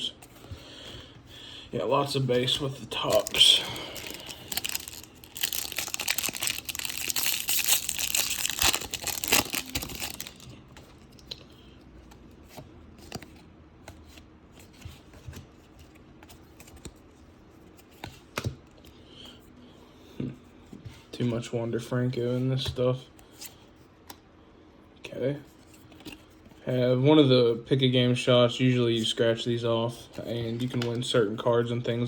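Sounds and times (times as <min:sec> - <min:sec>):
wrapper tearing and crinkling: 0:03.0 - 0:10.5
soft clicks of cards handled: 0:10.7 - 0:17.1.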